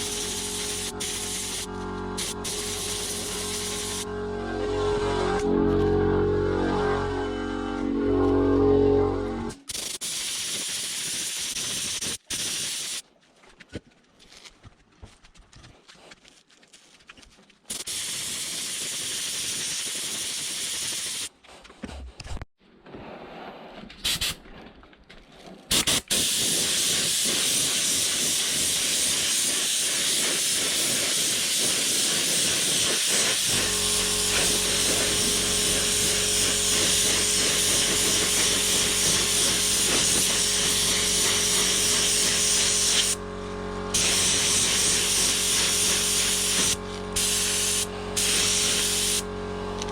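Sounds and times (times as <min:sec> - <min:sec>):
paint spray gun hissing: 0:00.0 - 0:04.1, 0:09.7 - 0:13.0, 0:17.7 - 0:21.3, 0:25.7 - 0:43.2, 0:43.9 - 0:49.3
air compressor motor hum: 0:00.0 - 0:09.7, 0:25.8 - 0:49.9.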